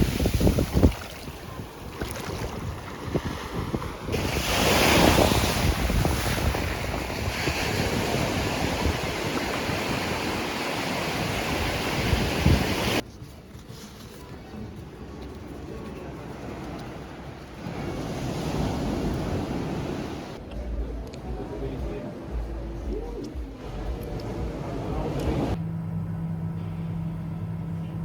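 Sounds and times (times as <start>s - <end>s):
ocean surf washing ashore: 0.0s - 13.0s, 15.4s - 20.4s
wind buffeting microphone: 0.0s - 13.0s.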